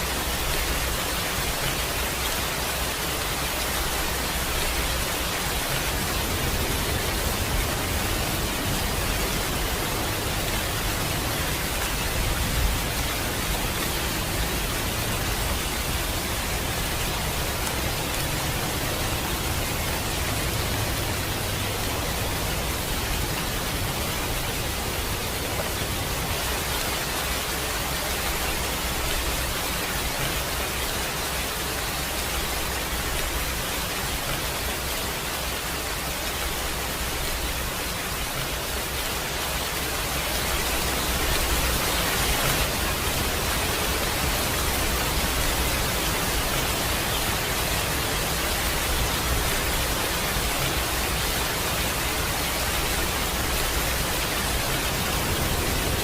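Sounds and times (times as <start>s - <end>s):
steady rain: 0.0s - 56.0s.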